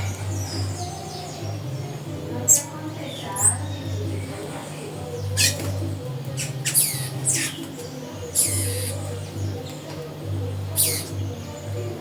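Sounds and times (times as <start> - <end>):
bird squawking: 3.4 - 3.7, 5.3 - 5.6, 6.4 - 7.6, 8.3 - 9.1, 10.8 - 11.2.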